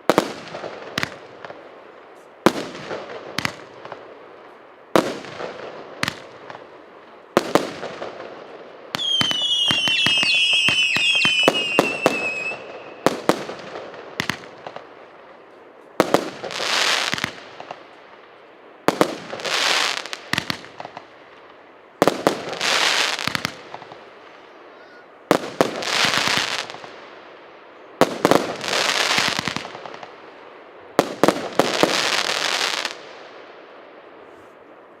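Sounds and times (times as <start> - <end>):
firework bangs: 7.3 - 14.9
falling firework whistles: 8.9 - 13.3
firework hissing: 9.0 - 13.2.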